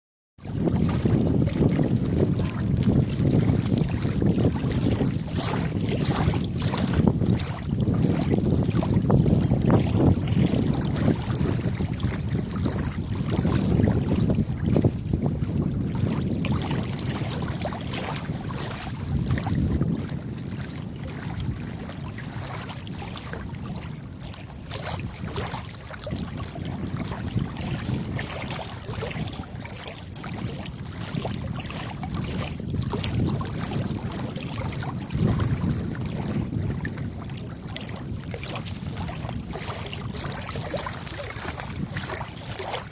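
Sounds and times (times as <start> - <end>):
water splashing and lapping: 0.4 - 42.9.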